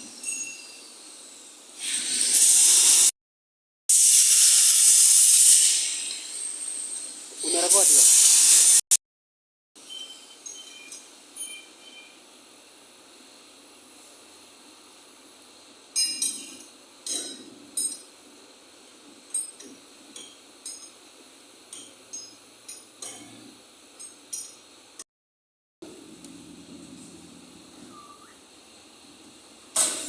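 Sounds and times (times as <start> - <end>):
metal clinks and taps: 24.0 - 24.7.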